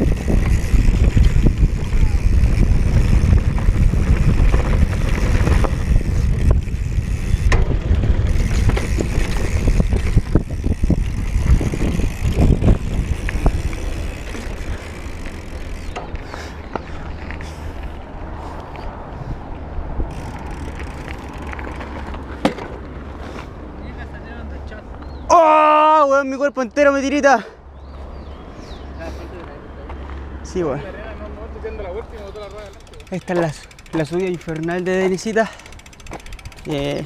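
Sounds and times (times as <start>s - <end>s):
bike rattling over rocks: 0.0s - 16.9s, 20.1s - 23.1s, 32.2s - 37.0s
wind rumbling on microphone: 0.0s - 22.3s.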